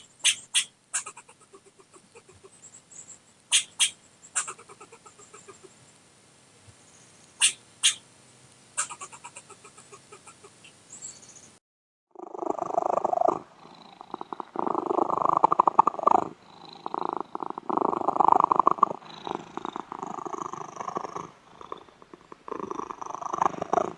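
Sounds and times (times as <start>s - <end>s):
cat purring: 1.0s - 2.6s, 4.4s - 5.8s, 12.1s - 23.9s.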